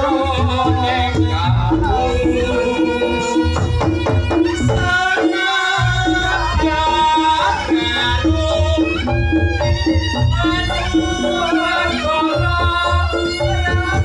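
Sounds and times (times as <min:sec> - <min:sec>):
heavy drumming: 0:00.0 - 0:14.0
reed melody: 0:00.0 - 0:14.0.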